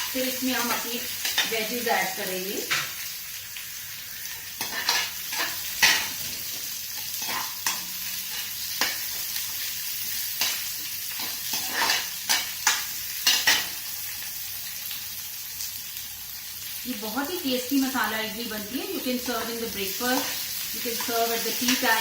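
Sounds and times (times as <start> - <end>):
onions sizzling in oil: 0.0 - 22.0
spatula scraping a pan: 4.2 - 9.4, 10.1 - 13.8.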